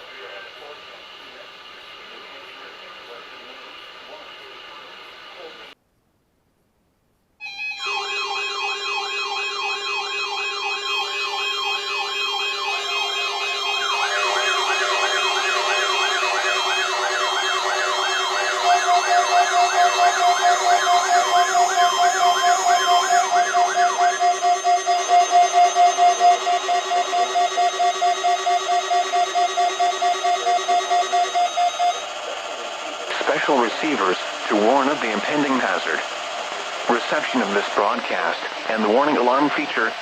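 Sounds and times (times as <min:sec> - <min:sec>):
loud pulsing beep alarm: 0:07.4 - 0:37.6
electronic siren wails: 0:07.4 - 0:39.9
steady tones: 0:07.9 - 0:40.0.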